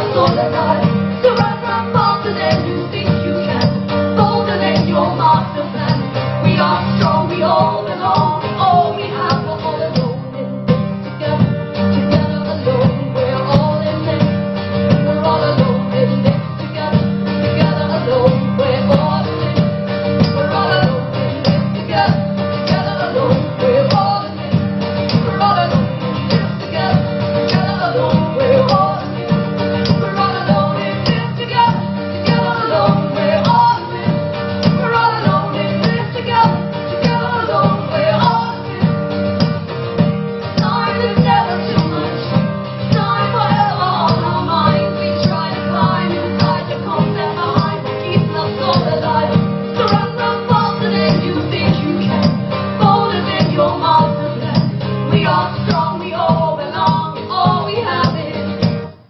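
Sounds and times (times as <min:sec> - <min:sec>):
person singing: 0:00.0 - 0:39.5, 0:40.5 - 0:58.6
live band music: 0:00.0 - 0:59.0.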